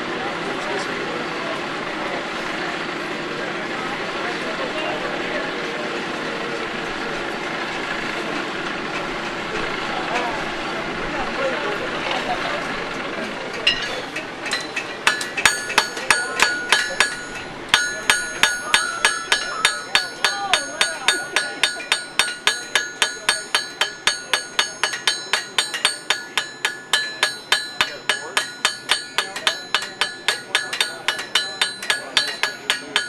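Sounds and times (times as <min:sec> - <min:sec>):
hammer ringing on anvil: 0:13.6 - 0:33.0.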